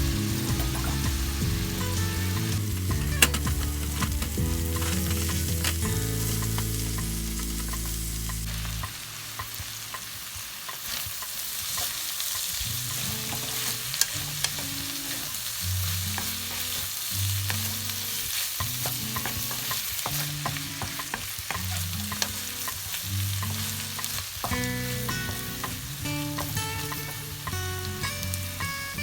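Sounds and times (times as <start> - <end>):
food sizzling in a hot pan: 0.0 - 29.0
spatula scraping a pan: 2.5 - 6.6, 11.8 - 15.4.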